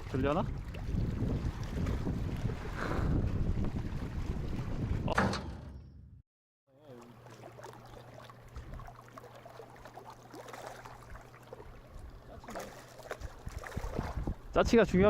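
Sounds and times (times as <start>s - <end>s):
wind buffeting microphone: 0.0s - 5.2s, 13.2s - 15.0s.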